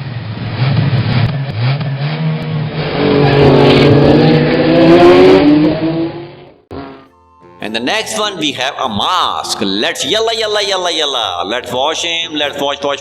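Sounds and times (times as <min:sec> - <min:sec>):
race car engine revving: 0:00.0 - 0:07.1.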